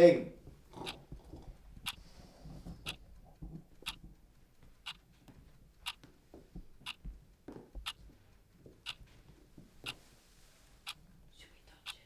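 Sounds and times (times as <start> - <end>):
clock ticking: 0.4 - 2.1, 2.8 - 10.0, 10.8 - 12.0.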